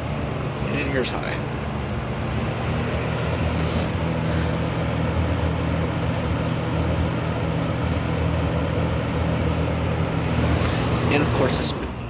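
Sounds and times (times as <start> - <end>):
fan air rushing: 0.0 - 12.0
low motor hum: 0.0 - 12.0.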